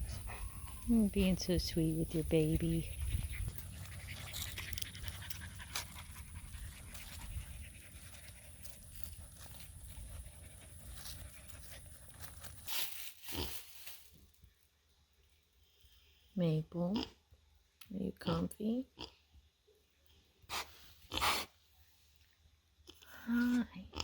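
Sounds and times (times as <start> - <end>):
dog panting: 2.2 - 12.3.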